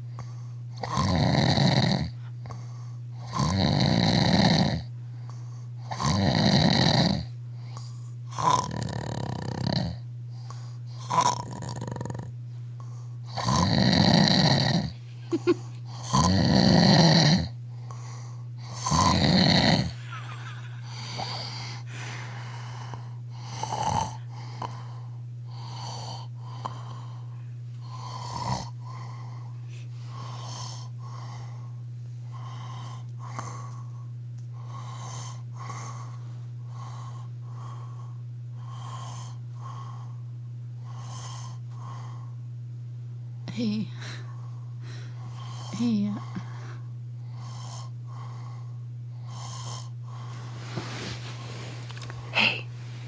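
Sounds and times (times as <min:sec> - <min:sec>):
steady low hum: 0:00.0 - 0:53.0
man snoring loudly: 0:00.8 - 0:02.2, 0:03.2 - 0:04.9, 0:05.9 - 0:07.3, 0:08.3 - 0:10.0, 0:11.0 - 0:12.3, 0:13.3 - 0:14.9, 0:16.0 - 0:17.5, 0:18.7 - 0:20.0, 0:23.4 - 0:24.7, 0:27.9 - 0:28.7.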